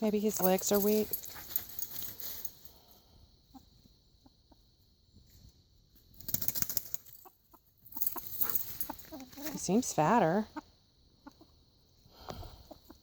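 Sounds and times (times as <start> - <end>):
rustling noise: 0.3 - 2.7
chickens clucking: 3.4 - 4.8, 7.2 - 13.0.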